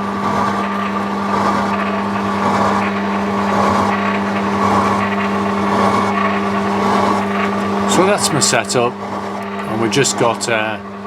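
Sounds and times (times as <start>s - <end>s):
milling machine hum: 0.0s - 11.0s
rough metal cutting noise: 0.0s - 11.0s.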